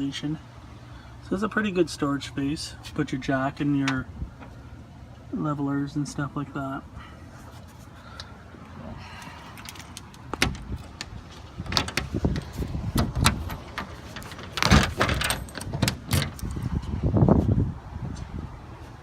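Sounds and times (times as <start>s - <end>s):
knocks and clatters of handling: 9.6s - 16.4s.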